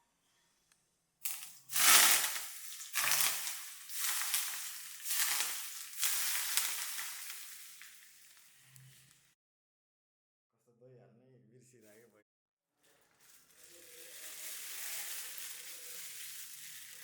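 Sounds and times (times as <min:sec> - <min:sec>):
food sizzling in hot oil: 0:01.2 - 0:09.1, 0:13.2 - 0:17.0.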